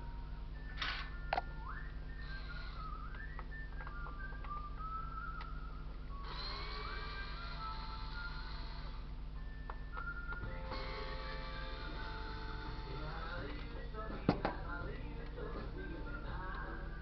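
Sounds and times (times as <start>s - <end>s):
music: 0.0s - 17.0s
steady low hum: 0.0s - 17.0s
person whistling a tune: 0.5s - 8.5s, 9.4s - 11.1s.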